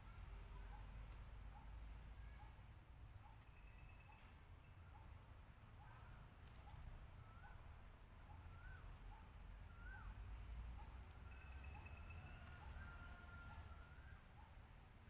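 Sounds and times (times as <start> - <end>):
bird chirps: 3.2 - 14.6.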